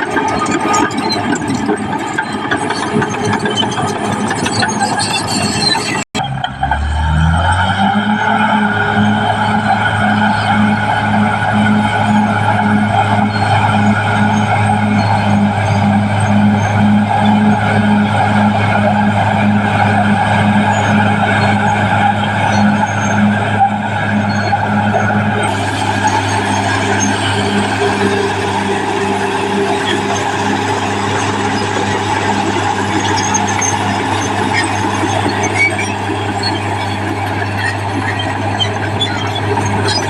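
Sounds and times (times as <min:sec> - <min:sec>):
bulldozer diesel engine running: 0:00.0 - 0:40.0.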